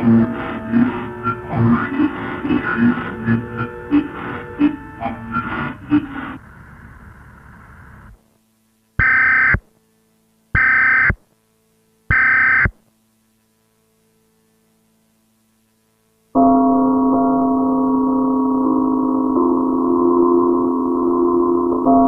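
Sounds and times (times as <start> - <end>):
loud steady multi-pitched tone: 0.0 - 8.2, 9.0 - 9.7, 10.5 - 11.3, 12.1 - 12.9, 16.4 - 22.0
faint hum: 0.0 - 22.0.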